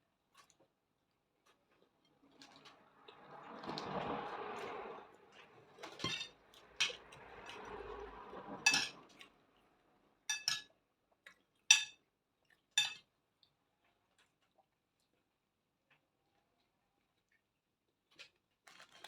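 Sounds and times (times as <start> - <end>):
cutlery clinking against dishes: 5.9 - 7.0, 8.7 - 9.0, 10.3 - 10.7, 11.7 - 12.0, 12.8 - 13.0.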